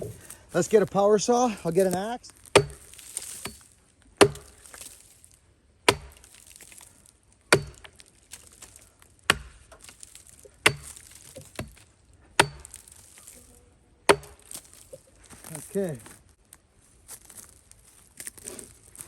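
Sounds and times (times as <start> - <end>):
axe chopping log: 1.8 - 5.0, 5.8 - 6.9, 7.5 - 13.3, 14.1 - 15.0.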